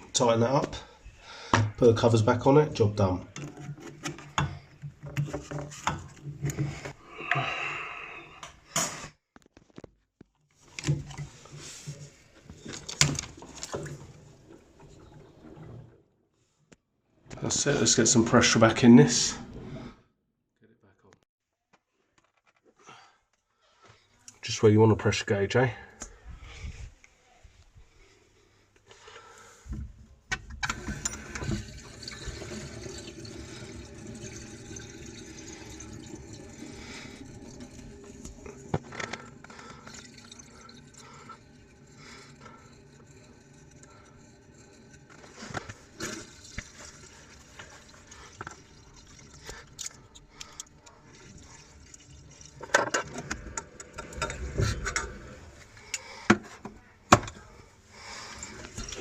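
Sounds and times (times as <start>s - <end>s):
water hissing through pipe: 30.6s - 56.3s, 57.8s - 59.0s.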